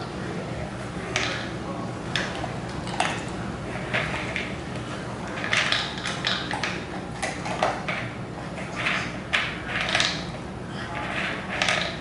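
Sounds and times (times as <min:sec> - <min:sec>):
dog eating dry kibble: 0:05.3 - 0:12.0.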